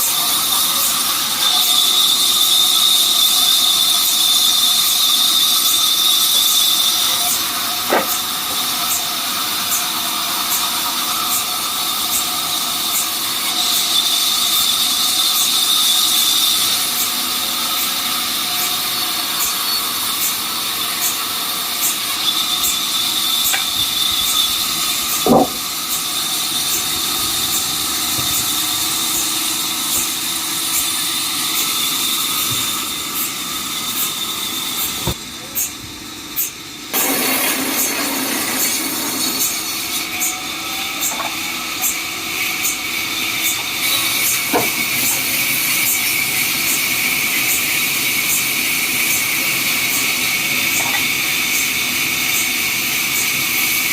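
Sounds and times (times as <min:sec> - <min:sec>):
sawmill saw whining through timber: 0:00.0 - 0:53.9
sharp knocks: 0:07.9 - 0:08.2, 0:25.2 - 0:25.7.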